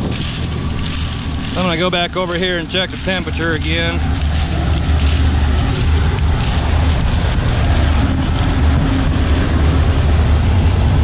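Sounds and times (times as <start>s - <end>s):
dryer fan and burner rumbling: 0.0s - 11.0s
wind buffeting microphone: 0.0s - 11.0s.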